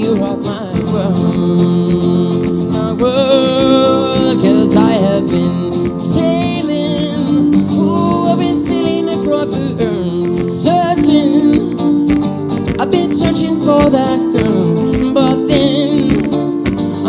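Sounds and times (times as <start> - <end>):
guitar: 0.0 - 17.0
held chords: 0.0 - 17.0
person singing: 0.0 - 17.0.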